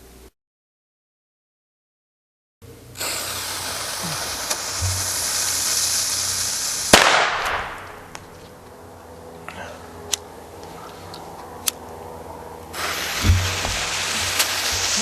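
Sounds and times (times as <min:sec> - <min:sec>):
firecracker fuse hissing: 0:03.0 - 0:08.1, 0:12.7 - 0:15.0
firecracker bang: 0:03.0 - 0:08.2, 0:12.8 - 0:15.0.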